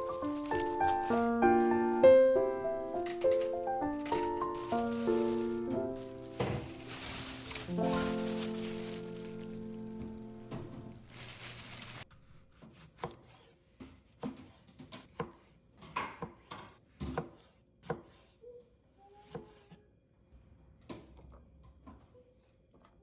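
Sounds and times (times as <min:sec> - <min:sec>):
dishes and utensils clinking: 0:00.0 - 0:01.3, 0:03.0 - 0:12.0.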